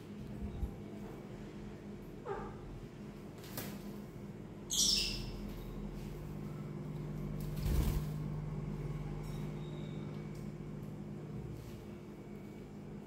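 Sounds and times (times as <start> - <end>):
steady low hum: 0.0 - 13.0
parrot squawk: 4.7 - 5.3.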